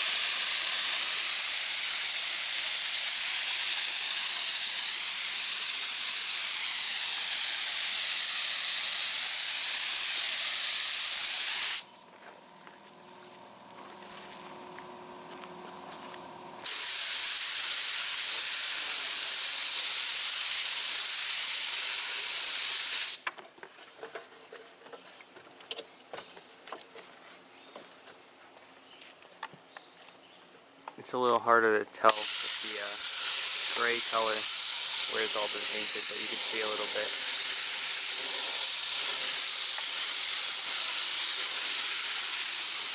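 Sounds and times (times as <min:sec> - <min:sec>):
spray gun hissing: 0:00.0 - 0:11.9, 0:16.6 - 0:23.2, 0:32.0 - 0:42.9.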